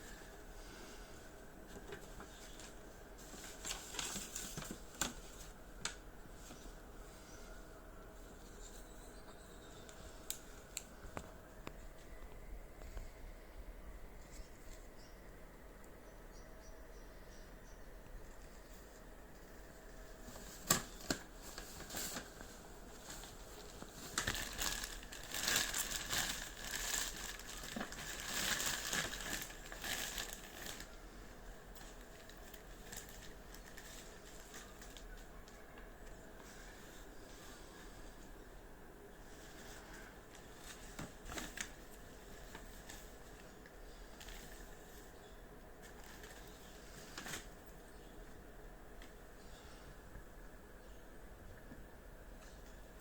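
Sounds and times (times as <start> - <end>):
packaging clicks and crinkles: 1.7 - 6.6, 20.3 - 36.6, 39.4 - 45.2, 45.8 - 47.8
packaging rustling: 1.7 - 6.6, 20.2 - 31.0, 31.6 - 36.2, 39.3 - 45.1, 45.8 - 47.7.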